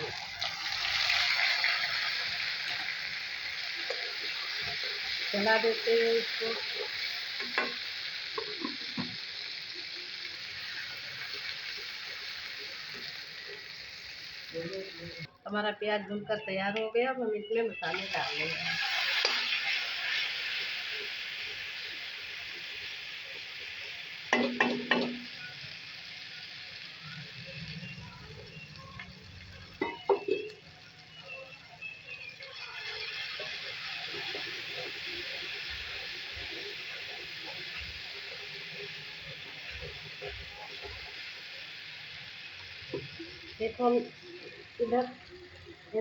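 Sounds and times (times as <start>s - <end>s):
onion sizzling in hot oil: 0.0s - 15.6s, 17.8s - 46.0s
spoon knocking on pan: 7.4s - 7.8s, 8.4s - 9.2s, 24.3s - 25.3s, 29.8s - 30.5s.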